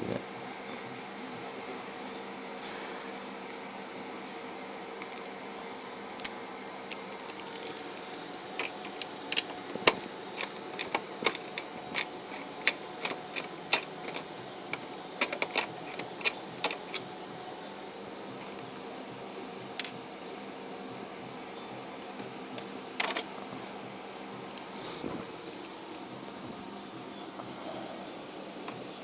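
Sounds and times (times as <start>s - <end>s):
faint steady hum: 0.0s - 29.0s
screwdriver clicking on metal: 8.6s - 17.0s.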